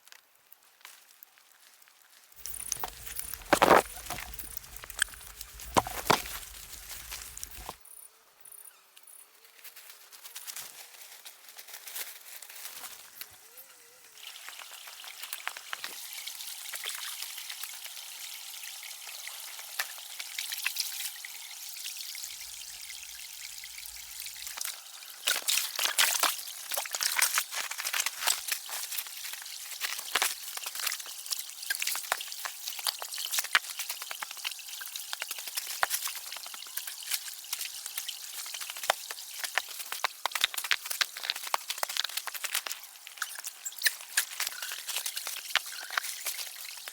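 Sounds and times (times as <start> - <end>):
patter of sharp drops: 2.4 - 7.8
water trickling: 2.4 - 7.8, 14.2 - 46.9.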